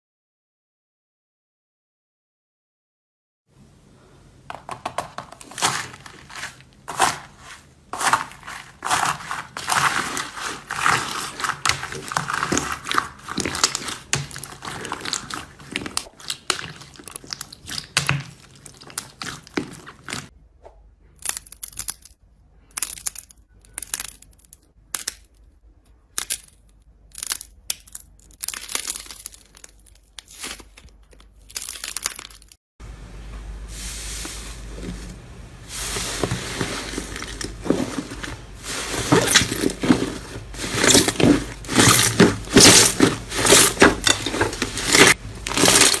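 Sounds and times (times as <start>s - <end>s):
slime crackling and popping: 8.0s - 20.3s.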